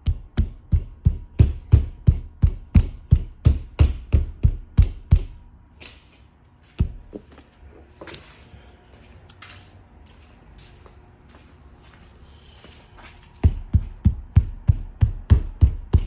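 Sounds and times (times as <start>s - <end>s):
thumps on sheet metal: 0.0s - 5.4s
rustling and scraping material: 5.8s - 13.4s.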